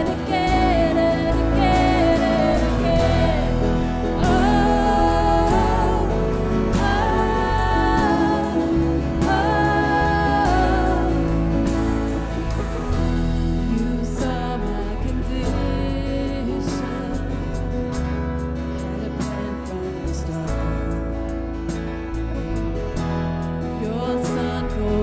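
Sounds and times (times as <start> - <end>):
worship band playing: 0.0 - 15.1
people singing: 0.0 - 17.2.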